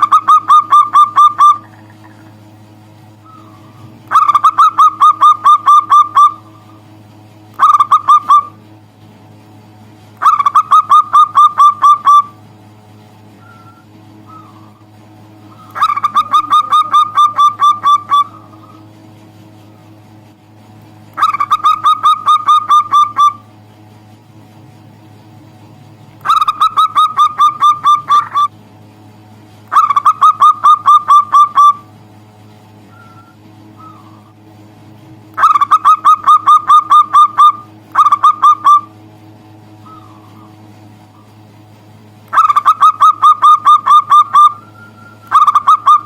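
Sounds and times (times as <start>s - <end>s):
dove rapid staccato cooing: 0.0s - 8.6s, 10.2s - 12.4s, 13.4s - 19.9s, 21.1s - 23.5s, 26.2s - 28.5s, 29.7s - 32.0s, 32.8s - 34.5s, 35.3s - 41.4s, 42.3s - 46.0s
steady low hum: 0.0s - 46.0s.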